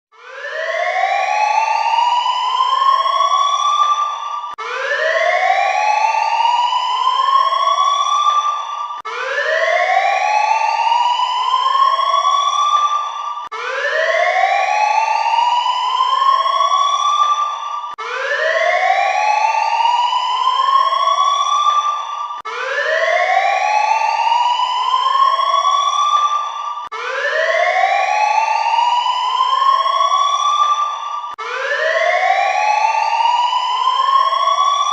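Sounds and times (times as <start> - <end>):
alert siren rising wail: 0.2 - 34.9.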